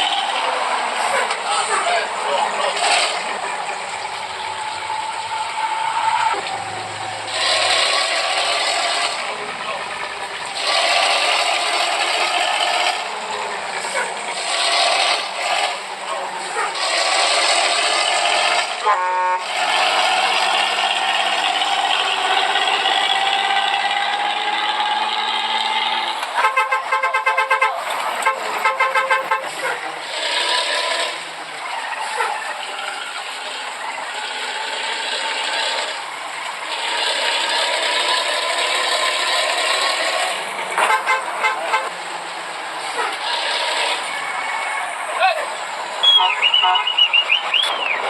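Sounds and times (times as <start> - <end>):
steady vehicle noise: 0.0 - 48.0
truck horn pulsed toots: 18.8 - 24.4, 25.0 - 29.9, 40.8 - 42.0, 46.0 - 48.0.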